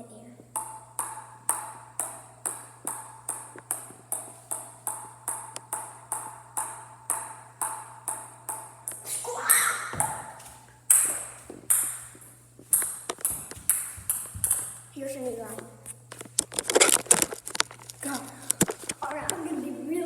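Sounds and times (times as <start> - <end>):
paddle tapping ping pong ball: 0.6 - 9.0, 9.9 - 14.8.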